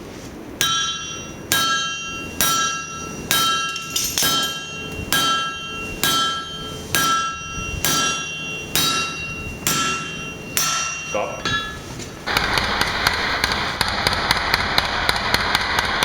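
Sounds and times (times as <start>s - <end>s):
hammer blows on an anvil: 0.6s - 13.8s.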